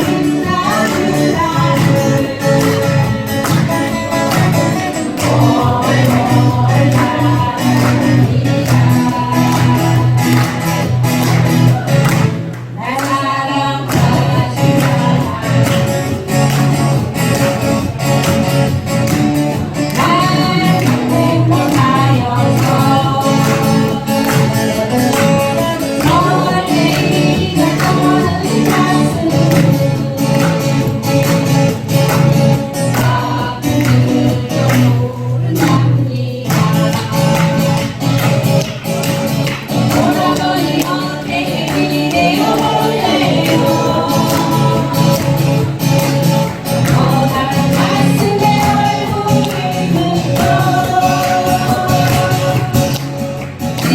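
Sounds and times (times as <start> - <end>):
person singing: 0.0 - 12.0, 12.8 - 17.1, 19.6 - 38.2, 39.6 - 53.2
acoustic guitars strumming: 0.0 - 53.9.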